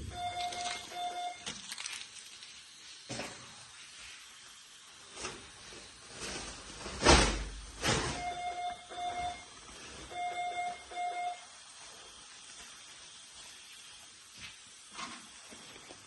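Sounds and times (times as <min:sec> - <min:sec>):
medical alarm beeping in pairs: 0:00.0 - 0:01.5, 0:08.1 - 0:11.5
hiss-like noise bursts: 0:09.4 - 0:16.0.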